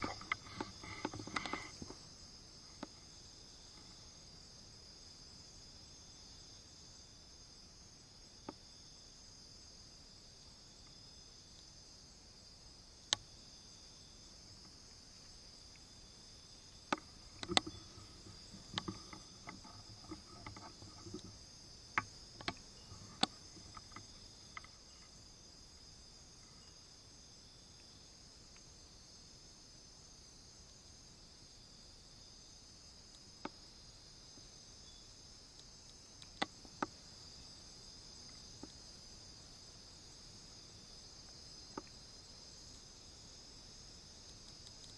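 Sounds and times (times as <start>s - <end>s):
insects chirping: 0.0s - 44.9s
sharp clicks: 16.9s - 21.3s.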